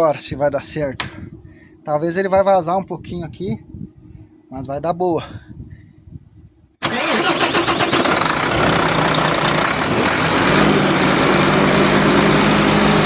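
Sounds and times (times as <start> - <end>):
diesel engine starting and idling: 6.8 - 13.0.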